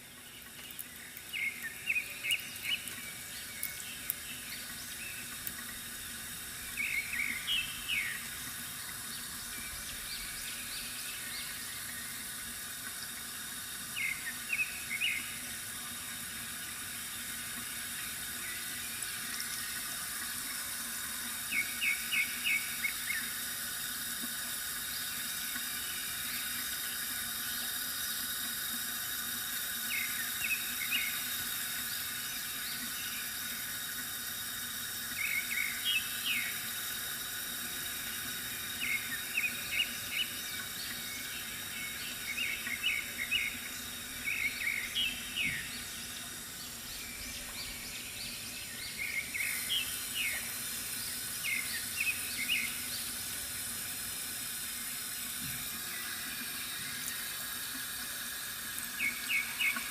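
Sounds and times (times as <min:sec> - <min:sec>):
fountain water trickling: 0:00.0 - 0:59.9
small birds chirping: 0:00.2 - 0:05.8, 0:06.5 - 0:12.2, 0:29.8 - 0:33.3, 0:35.1 - 0:36.7, 0:38.0 - 0:53.2, 0:59.0 - 0:59.9.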